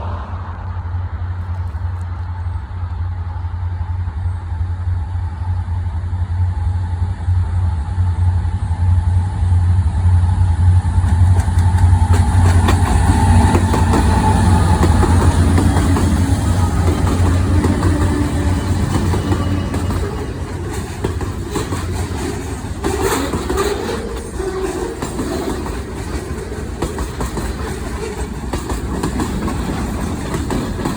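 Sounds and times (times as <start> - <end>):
diesel locomotive rumble: 0.0 - 30.9
rail clicks: 10.4 - 30.9.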